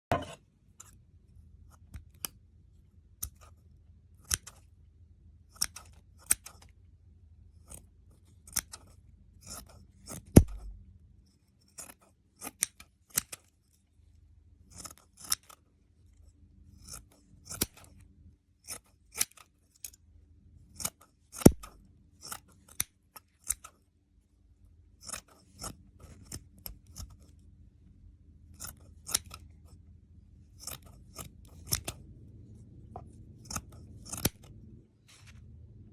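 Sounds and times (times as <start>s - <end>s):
scissors snipping: 9.5s - 10.8s, 16.8s - 17.9s, 20.8s - 23.7s, 28.6s - 29.4s, 30.6s - 32.0s, 33.0s - 34.5s.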